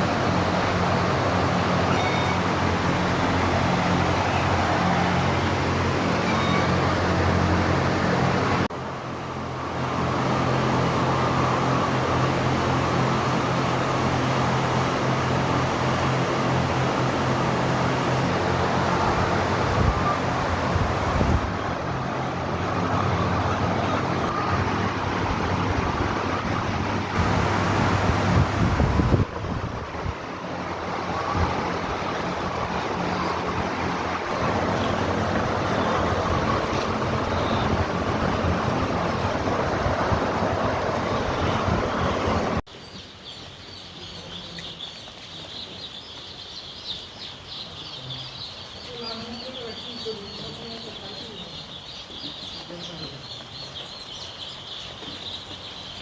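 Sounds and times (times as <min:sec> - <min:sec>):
poultry chicks cheeping: 0:00.0 - 0:08.7, 0:09.9 - 0:29.0, 0:29.9 - 0:56.0
loud rushing fan noise: 0:00.0 - 0:42.7.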